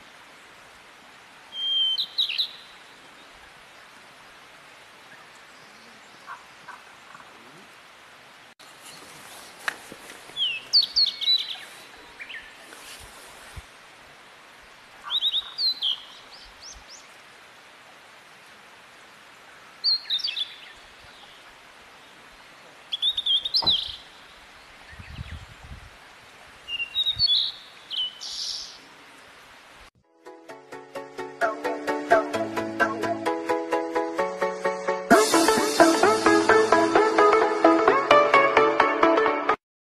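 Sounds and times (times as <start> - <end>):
songbird chirping: 0.0 - 8.0, 8.6 - 13.6, 14.6 - 17.8, 18.8 - 29.6
background hiss: 0.0 - 29.9, 30.5 - 38.6.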